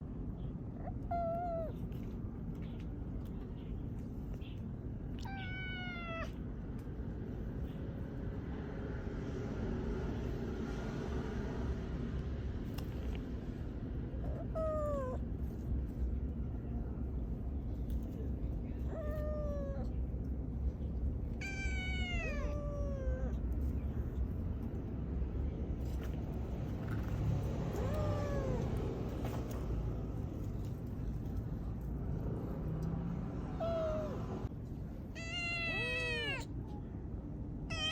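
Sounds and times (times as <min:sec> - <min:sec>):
low background rumble: 0:00.0 - 0:37.9
cat meowing: 0:00.8 - 0:02.0, 0:05.1 - 0:06.4, 0:14.2 - 0:15.2, 0:18.9 - 0:20.0, 0:21.4 - 0:23.4, 0:27.7 - 0:28.9, 0:33.5 - 0:34.4, 0:35.1 - 0:36.6, 0:37.6 - 0:37.9.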